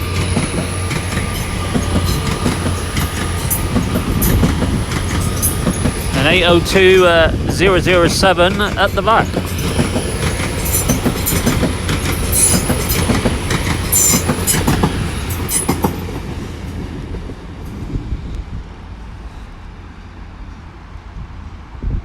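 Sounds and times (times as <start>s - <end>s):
high squeal from train wheels: 0.0s - 16.7s
train wheels clicking over rail joints: 0.0s - 17.8s.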